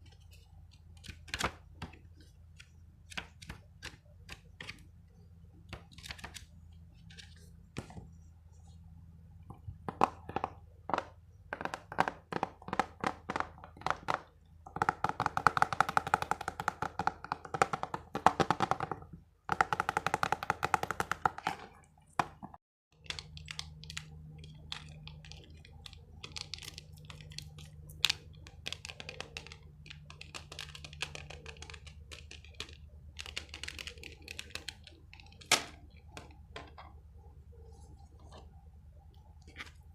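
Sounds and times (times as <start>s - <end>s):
tapping on small hard object: 9.8s - 21.6s.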